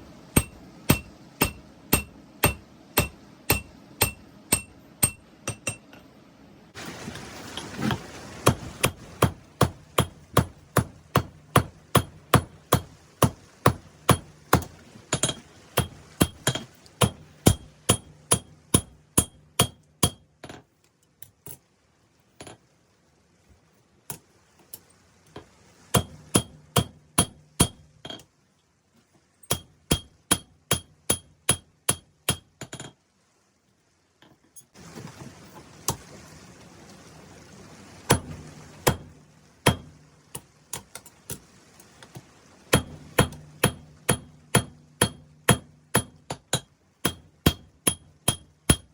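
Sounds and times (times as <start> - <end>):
steady low hum: 0.0 - 20.7
hammer striking steel on anvil: 0.4 - 6.0, 8.8 - 20.6, 25.9 - 28.2, 29.4 - 32.9, 38.1 - 41.1, 42.7 - 48.9.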